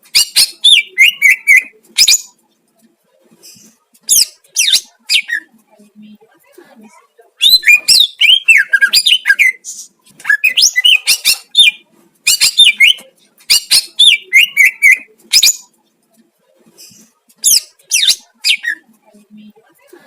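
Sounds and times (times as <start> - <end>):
bird singing whistles and chatter: 0.2 - 2.3, 7.4 - 15.7, 17.4 - 18.9.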